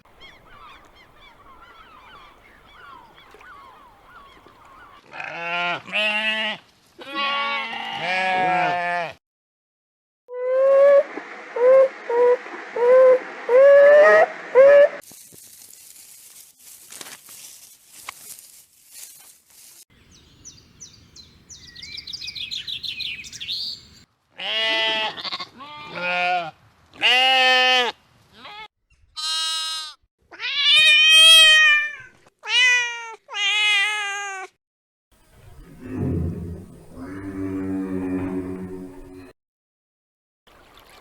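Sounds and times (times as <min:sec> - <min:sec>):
goat bleating: 0:05.1 - 0:09.2, 0:24.4 - 0:34.5
high chirping calls: 0:20.0 - 0:24.0.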